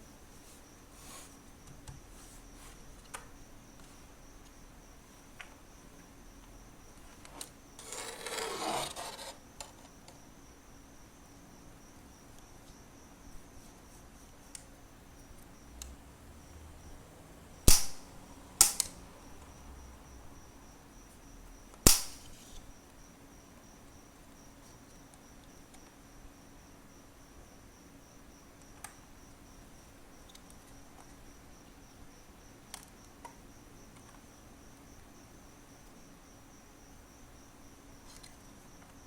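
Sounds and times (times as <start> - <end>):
scraping or rustling: 7.8 - 9.4
sharp loud clicks: 17.6 - 19.0, 21.8 - 22.4.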